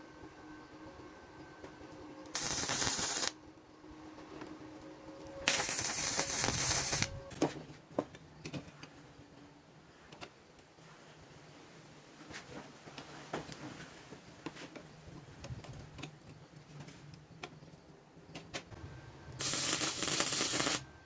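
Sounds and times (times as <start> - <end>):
faint steady hum: 0.0 - 21.0
short bursts of hiss: 2.3 - 3.4, 5.4 - 7.1, 19.4 - 20.8.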